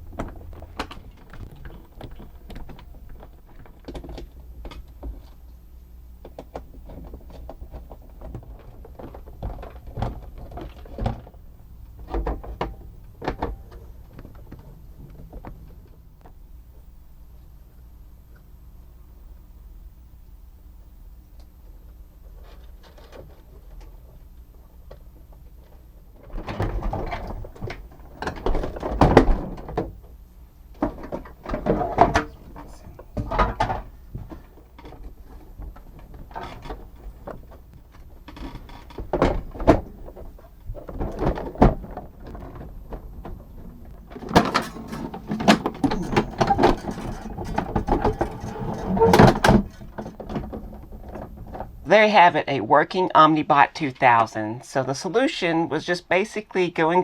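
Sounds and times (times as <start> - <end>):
parts clunking and rattling: 0.0 - 5.5, 6.2 - 16.4, 22.4 - 51.9.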